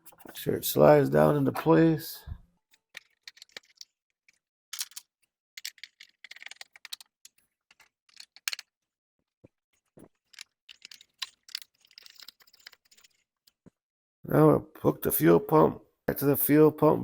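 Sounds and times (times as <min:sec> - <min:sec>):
tools and parts clicking and rattling: 0:00.0 - 0:00.4, 0:02.7 - 0:13.8.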